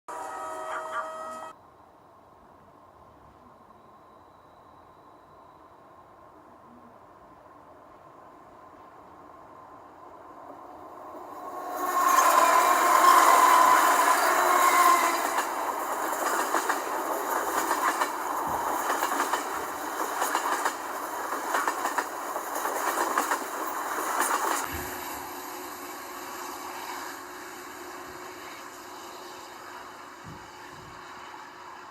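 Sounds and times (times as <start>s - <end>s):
train horn chord: 0.1s - 1.5s, 14.4s - 15.3s
train wheels clickety-clack: 11.6s - 25.0s, 30.0s - 31.9s.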